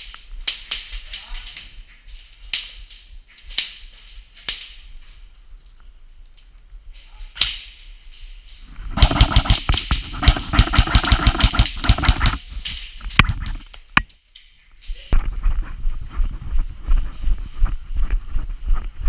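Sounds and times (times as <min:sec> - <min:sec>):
airsoft gun firing full auto: 0:09.0 - 0:12.4.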